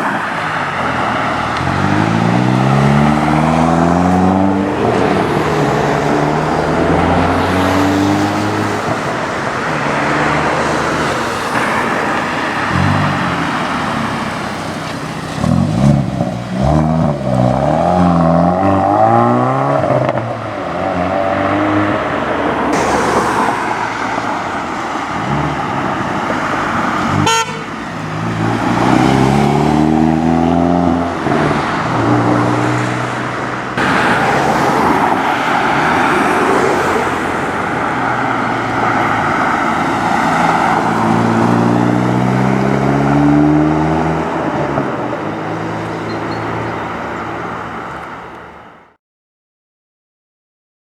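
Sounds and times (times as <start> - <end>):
cars accelerating away: 0.0 - 48.7
sharp exhaust crack: 22.7 - 28.8.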